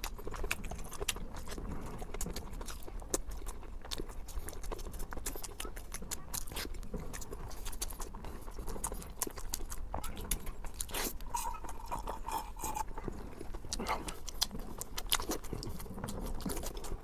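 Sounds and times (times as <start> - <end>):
wet chewing and mouth smacking: 0.0 - 17.0.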